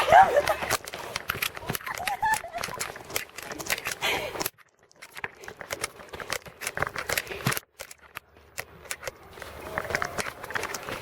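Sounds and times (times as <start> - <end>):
scattered knocks and clicks: 0.4 - 11.0.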